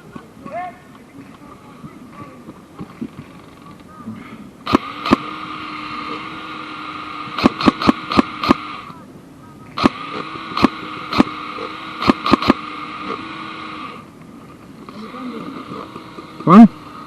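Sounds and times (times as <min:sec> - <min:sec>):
steady whining hum: 0:00.0 - 0:17.0
airsoft gun shots: 0:04.6 - 0:05.5, 0:07.2 - 0:08.9, 0:09.8 - 0:13.2.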